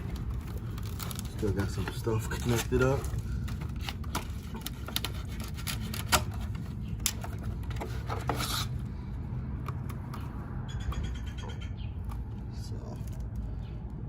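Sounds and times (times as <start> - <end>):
knife scraping and cutting: 0.8 - 8.8.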